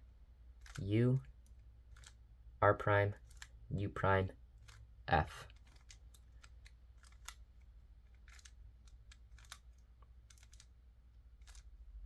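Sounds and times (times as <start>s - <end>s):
low steady hum: 0.0s - 12.0s
puzzle cube clicking: 0.5s - 2.3s, 3.1s - 3.6s, 4.6s - 11.8s.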